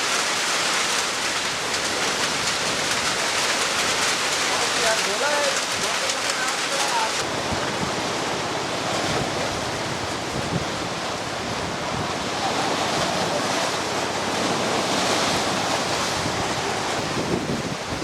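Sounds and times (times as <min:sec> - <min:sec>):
water rushing: 0:00.0 - 0:18.0
wind on microphone: 0:07.2 - 0:12.6, 0:15.8 - 0:18.0.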